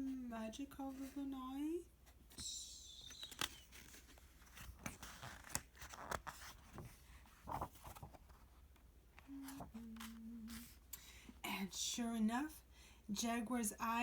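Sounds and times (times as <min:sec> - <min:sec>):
paper pages rustling: 0:02.1 - 0:10.8.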